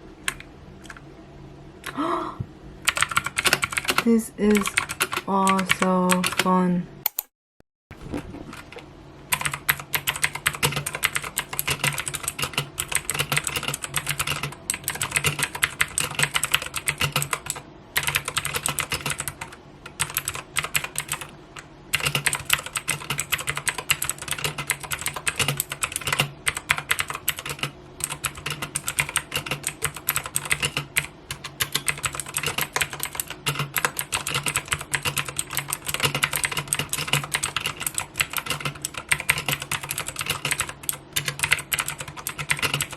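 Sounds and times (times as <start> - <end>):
mechanical keyboard key clicks: 7.1 - 7.3.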